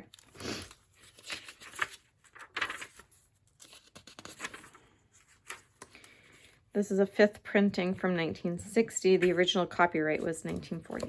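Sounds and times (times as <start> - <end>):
book pages turning: 0.0 - 6.6, 9.1 - 11.0.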